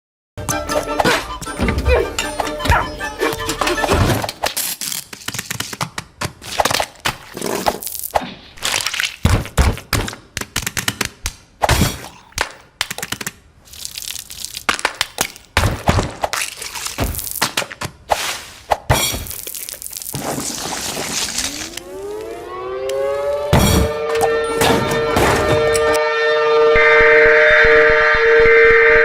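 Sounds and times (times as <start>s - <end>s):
cracks thuds and crunches: 3.9s - 18.0s.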